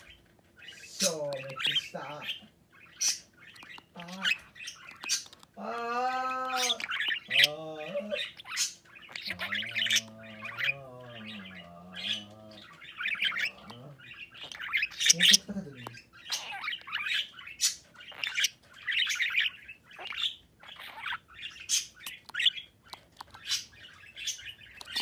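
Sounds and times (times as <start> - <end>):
budgerigar chattering: 0.0 - 25.0
warbling bird calls: 0.0 - 25.0
sharp clicks: 3.4 - 4.0.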